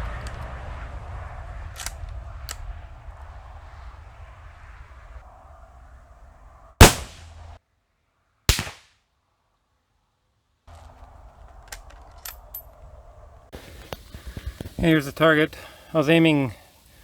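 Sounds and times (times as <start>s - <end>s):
rifle shots: 6.8s - 7.5s, 8.5s - 8.9s.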